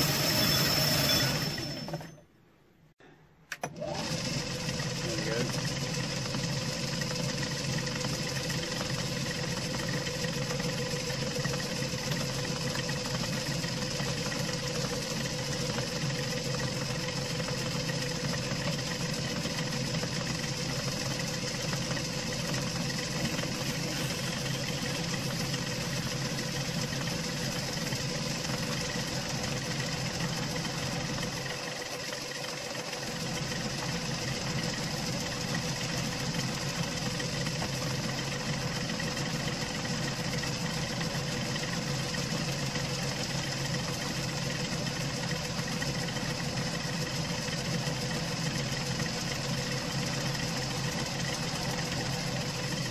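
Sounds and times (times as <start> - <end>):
metal lathe humming with whine: 0.0 - 2.1.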